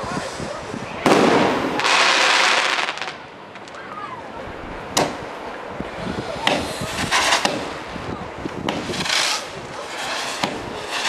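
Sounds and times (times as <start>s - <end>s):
crackling rushing thunder: 0.0s - 3.3s, 4.6s - 11.0s
thunder crack: 1.0s - 3.2s.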